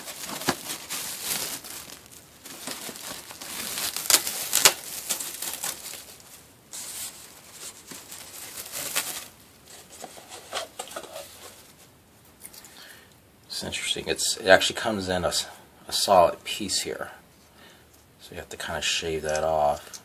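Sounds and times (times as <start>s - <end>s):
sharp crackles: 0.0s - 6.4s
packaging crinkling and rustling: 0.0s - 12.7s.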